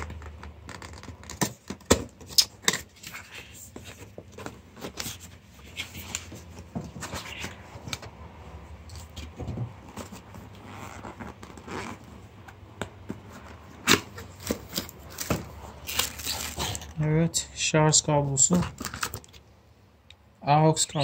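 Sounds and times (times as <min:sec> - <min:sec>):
cardboard and plastic rustling: 0:00.0 - 0:08.2, 0:08.8 - 0:17.0.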